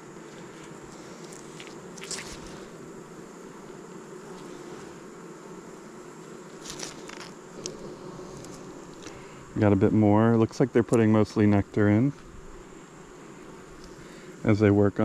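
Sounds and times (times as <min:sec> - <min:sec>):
bees buzzing: 0:00.0 - 0:15.0
hive frames clicking: 0:00.2 - 0:02.9, 0:06.2 - 0:09.5.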